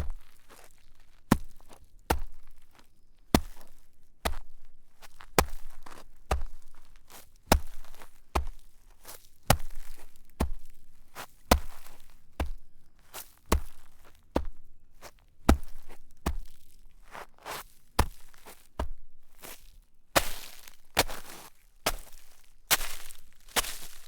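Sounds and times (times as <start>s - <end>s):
footsteps crunching in snow: 5.0s - 24.0s.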